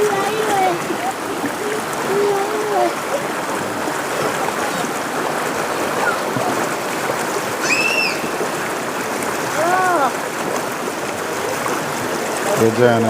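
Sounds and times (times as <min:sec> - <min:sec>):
stream water rushing: 0:00.0 - 0:13.0
high-pitched call: 0:07.6 - 0:08.3.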